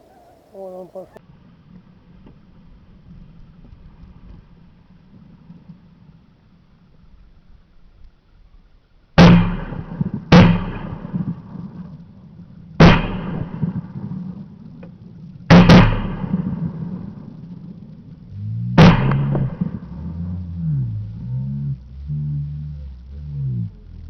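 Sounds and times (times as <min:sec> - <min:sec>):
shotgun shots echoing: 0:09.2 - 0:11.6, 0:12.8 - 0:14.4, 0:15.5 - 0:17.0, 0:18.8 - 0:19.8.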